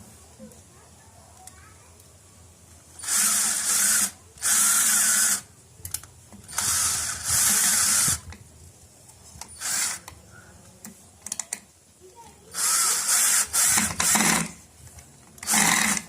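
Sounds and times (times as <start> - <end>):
power drill running: 3.0 - 5.5, 6.4 - 8.2, 9.6 - 10.0, 12.6 - 14.6, 15.4 - 16.0.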